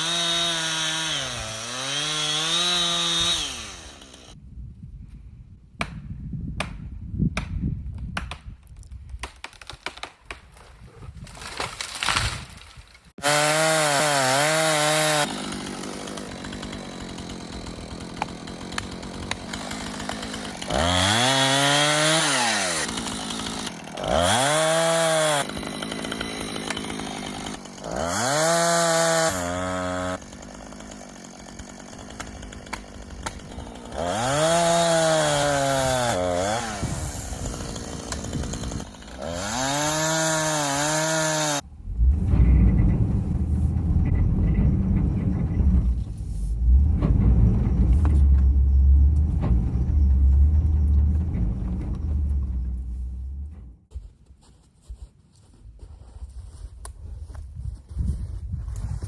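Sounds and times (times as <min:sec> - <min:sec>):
chainsaw revving and idling: 0:00.0 - 0:04.4, 0:13.2 - 0:42.0
snaps and crackles: 0:08.1 - 0:13.0.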